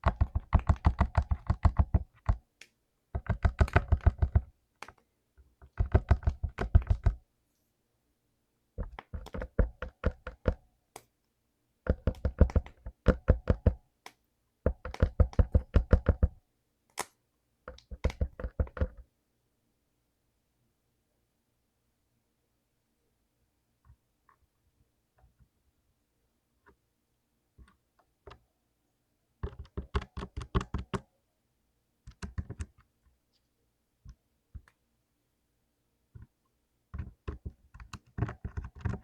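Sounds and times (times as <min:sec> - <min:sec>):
clicky mechanical keyboard typing: 0:00.0 - 0:02.4, 0:03.2 - 0:05.0, 0:05.7 - 0:07.2, 0:11.9 - 0:13.8, 0:14.7 - 0:16.4, 0:29.4 - 0:31.0, 0:32.1 - 0:32.8, 0:37.0 - 0:39.0.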